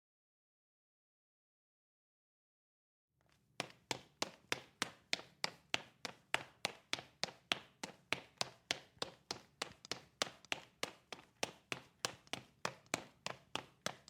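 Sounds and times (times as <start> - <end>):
running footsteps on brick floor: 3.5 - 14.0.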